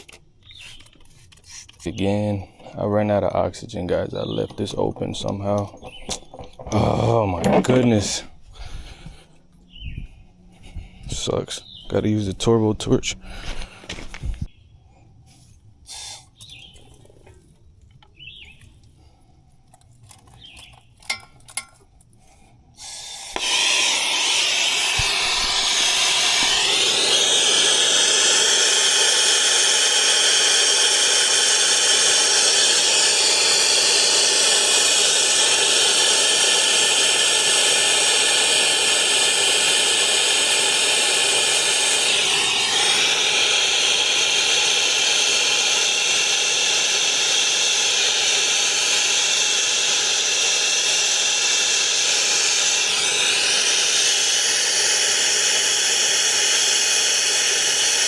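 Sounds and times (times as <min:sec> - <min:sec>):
torch hissing: 0:15.9 - 0:16.9, 0:22.8 - 0:58.0.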